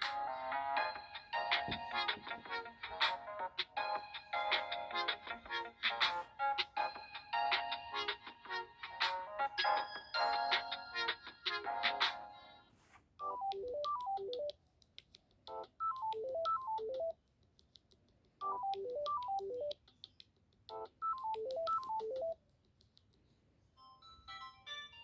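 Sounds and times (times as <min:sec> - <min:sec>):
higher ringtone with busy notes: 0:00.3 - 0:14.5, 0:23.8 - 0:25.0
phone ringtone: 0:03.8 - 0:14.5, 0:15.6 - 0:17.1, 0:18.4 - 0:19.7, 0:20.8 - 0:22.4, 0:23.8 - 0:25.0.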